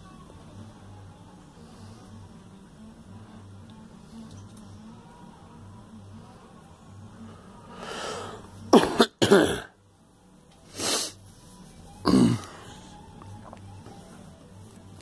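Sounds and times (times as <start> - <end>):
girl coughing: 8.7 - 9.8, 12.1 - 12.4.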